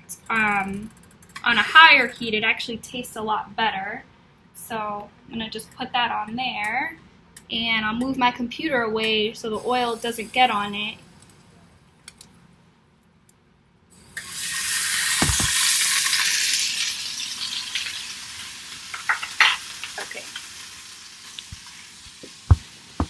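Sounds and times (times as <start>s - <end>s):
steak sizzling in oil: 14.2s - 23.0s.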